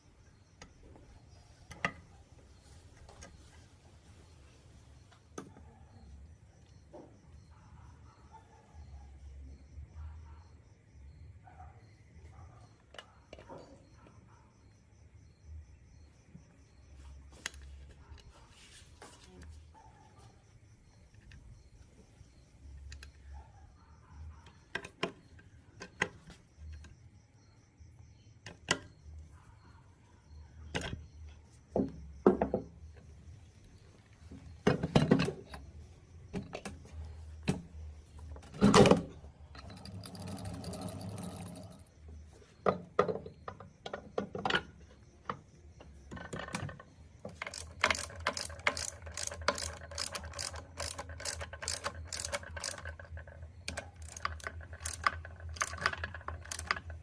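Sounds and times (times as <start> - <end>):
metal tools clinking and knocking: 38.2 - 41.9, 42.6 - 57.0
ratchet clicking: 39.6 - 41.9, 47.2 - 57.0.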